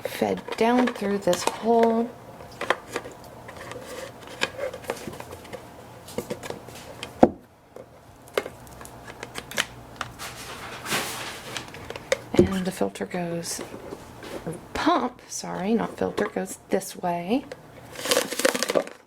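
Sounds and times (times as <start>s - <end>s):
plastic parts clicking and knocking: 17.5s - 19.0s.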